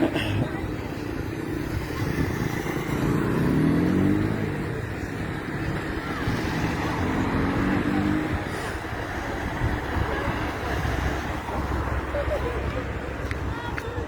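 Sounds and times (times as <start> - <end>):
engine revving up: 1.8 - 4.9, 5.6 - 8.7.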